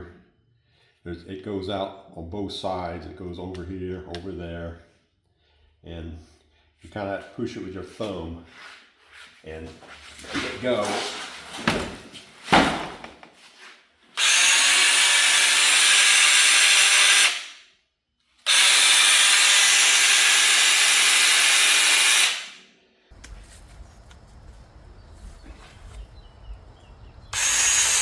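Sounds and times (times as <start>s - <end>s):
handling knocks: 10.3s - 13.4s
electric mini chainsaw whining: 14.2s - 17.6s, 18.4s - 22.6s, 27.4s - 28.0s.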